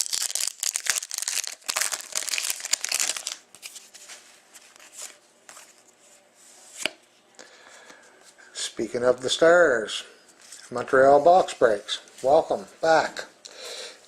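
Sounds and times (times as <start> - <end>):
wrapper crinkling and tearing: 0.0 - 3.8.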